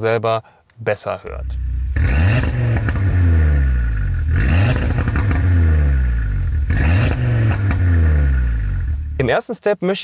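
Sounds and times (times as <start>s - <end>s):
car engine revving: 1.3s - 9.2s.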